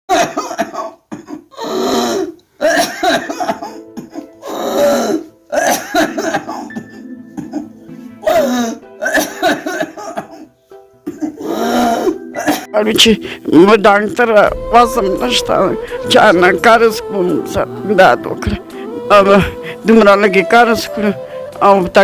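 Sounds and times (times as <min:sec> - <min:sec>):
person coughing: 0:00.1 - 0:12.8.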